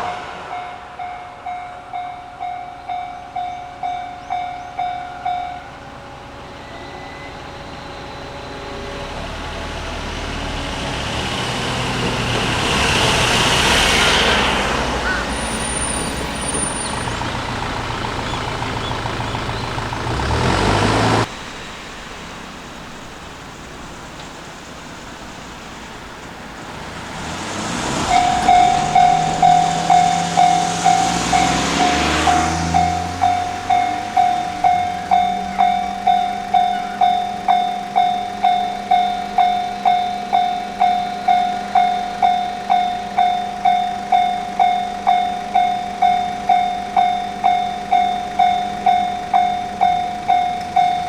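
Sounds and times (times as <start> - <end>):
vehicle passing close: 0.0 - 2.6, 8.4 - 21.6, 25.4 - 42.8
level-crossing bell ringing: 27.9 - 51.0.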